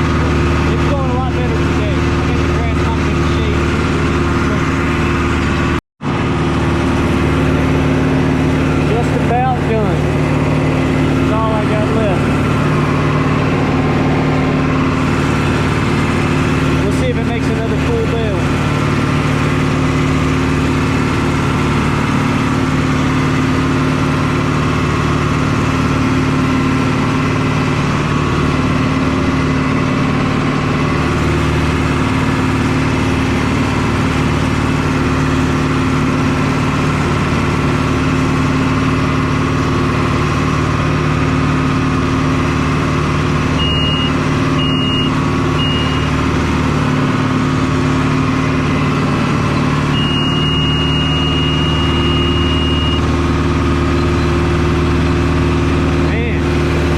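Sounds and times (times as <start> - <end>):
tractor engine running: 0.0 - 56.9
high electronic beeps: 43.6 - 46.2, 49.5 - 53.1.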